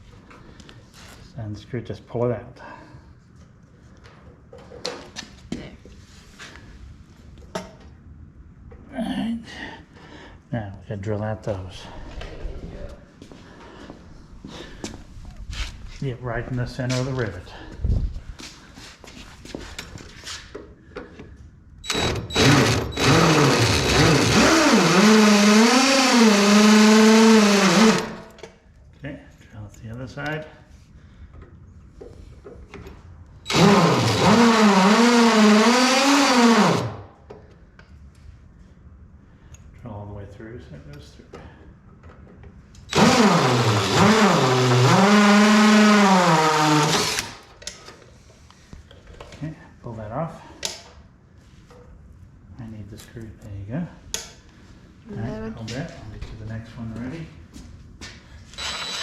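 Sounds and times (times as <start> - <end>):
electric drill drilling rivet: 21.8 - 28.4, 33.5 - 37.0, 42.9 - 47.5, 58.5 - 59.0.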